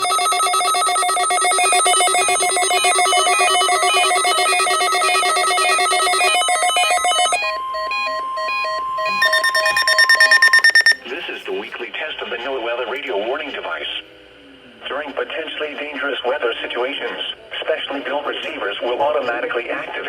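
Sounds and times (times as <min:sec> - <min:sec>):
electronic ringtone trilling: 0:07.8 - 0:11.0
steady single tone: 0:09.1 - 0:11.0.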